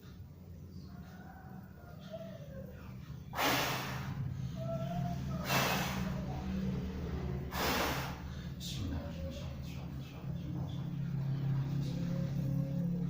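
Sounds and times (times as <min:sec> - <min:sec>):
steady low hum: 0:00.0 - 0:13.0
person exhaling forcefully: 0:03.4 - 0:04.2, 0:05.4 - 0:06.2, 0:07.5 - 0:08.4.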